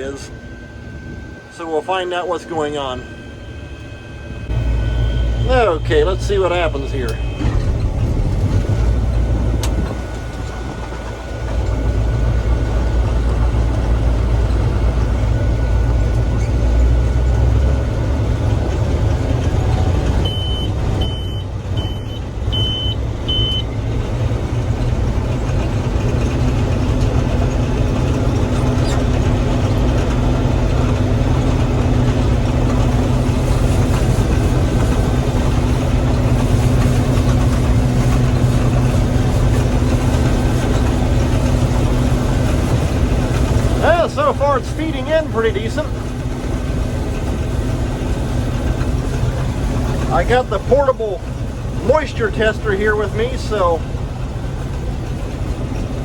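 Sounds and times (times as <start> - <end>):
short high-pitched beeps: 0.0 - 7.4, 20.2 - 23.6
combine harvester running: 0.0 - 56.0
steady hum: 0.0 - 56.0.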